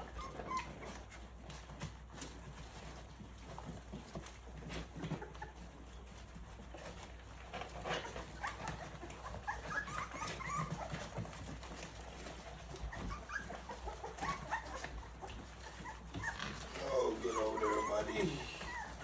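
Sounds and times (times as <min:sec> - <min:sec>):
puppies whimpering and squeaking: 0:00.0 - 0:19.0.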